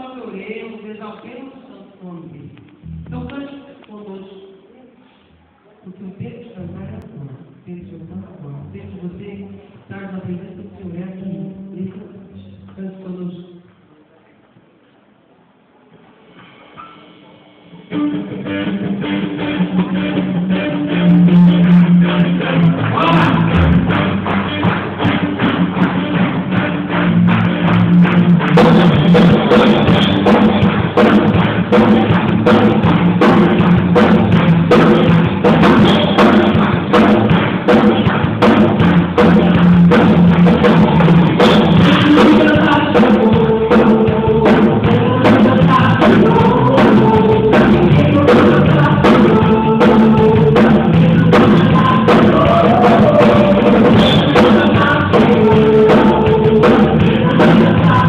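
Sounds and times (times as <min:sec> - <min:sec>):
gospel music: 0:02.7 - 0:03.9, 0:17.7 - 0:58.0
drum kit beat: 0:02.8 - 0:03.3, 0:18.6 - 0:58.0
bass line: 0:02.8 - 0:03.5, 0:06.6 - 0:09.4, 0:17.9 - 0:58.0.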